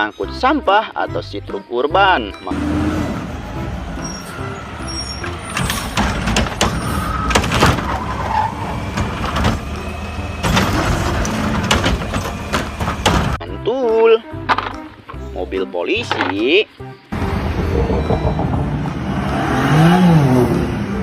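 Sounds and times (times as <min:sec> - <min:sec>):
plastic toy trucks clattering: 0:05.5 - 0:13.4, 0:14.5 - 0:15.2, 0:16.0 - 0:16.5
steady low rumble: 0:17.1 - 0:19.6.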